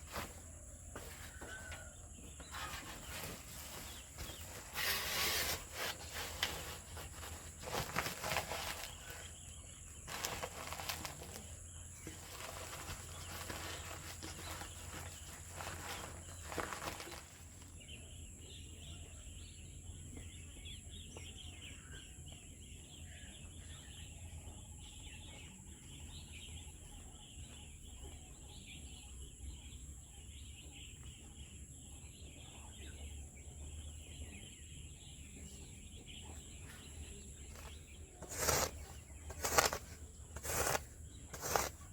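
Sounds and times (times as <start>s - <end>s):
rustling and knocking: 0.0s - 9.4s, 10.0s - 17.6s, 37.5s - 41.9s
birds chirping: 0.0s - 41.9s.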